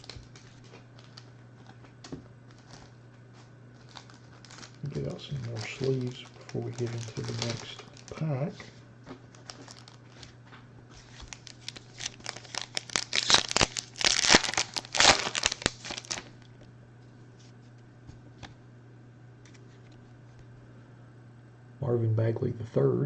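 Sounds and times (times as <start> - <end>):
foil wrapper tearing and crinkling: 0.0 - 1.8, 2.5 - 3.0, 3.8 - 8.3, 9.3 - 10.3, 10.9 - 16.5.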